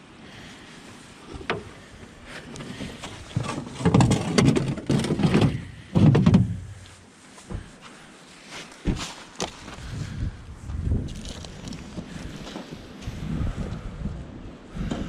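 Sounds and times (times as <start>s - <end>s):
boat gear clattering and scraping: 1.3s - 6.9s.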